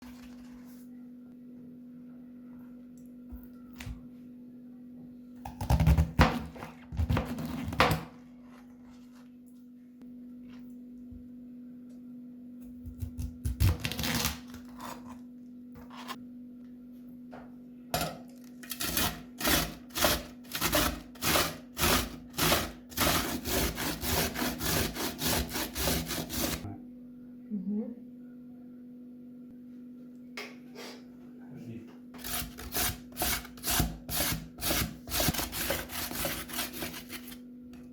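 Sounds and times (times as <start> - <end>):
low steady hum: 0.0 - 37.9
vegetables being grated: 18.6 - 26.6, 32.2 - 37.4.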